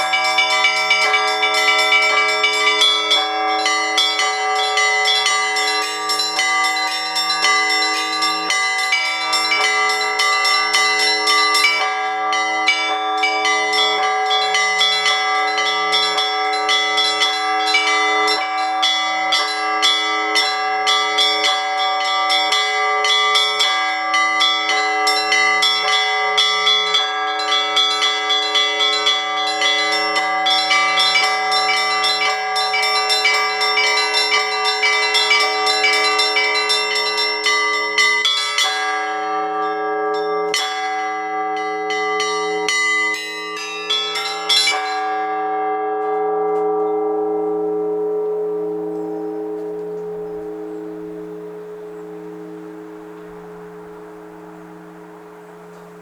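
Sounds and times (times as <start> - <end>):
small high bells chiming rapidly: 0.0 - 45.4
large bells ringing: 0.0 - 56.0.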